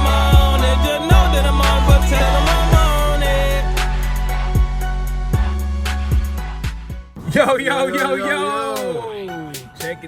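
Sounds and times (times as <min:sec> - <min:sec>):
deep bass line: 0:00.0 - 0:07.2
hip-hop music: 0:00.0 - 0:10.0.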